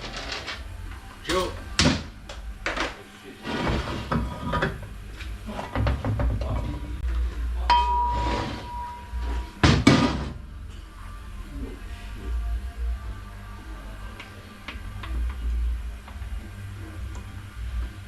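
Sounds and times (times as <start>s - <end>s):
metal piece ringing: 7.7s - 9.6s.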